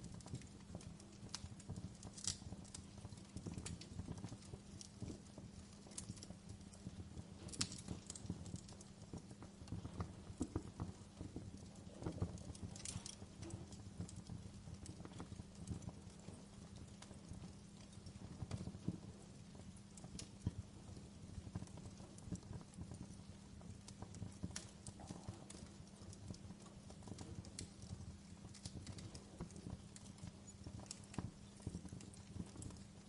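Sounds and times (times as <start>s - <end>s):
wood fire crackling and popping: 0.0s - 33.0s.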